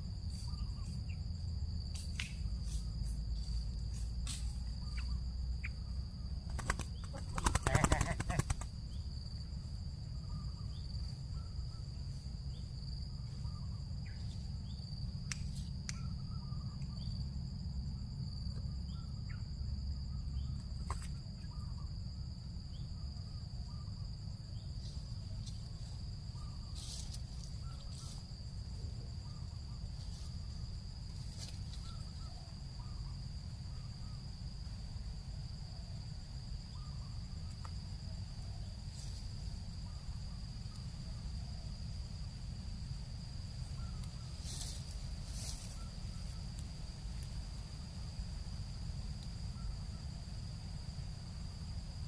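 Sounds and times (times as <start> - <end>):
high-pitched insect drone: 0.0 - 52.0.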